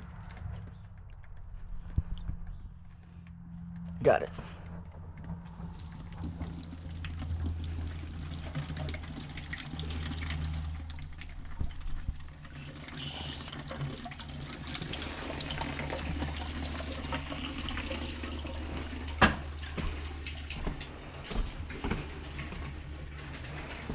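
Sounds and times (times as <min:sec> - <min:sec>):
low hum: 0:00.0 - 0:23.9
water splashing from hose: 0:05.6 - 0:23.9.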